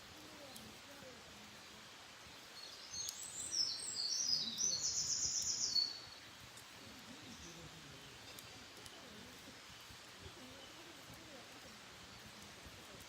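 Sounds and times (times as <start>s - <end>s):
songbird singing with trill: 2.2s - 6.4s, 7.2s - 11.1s.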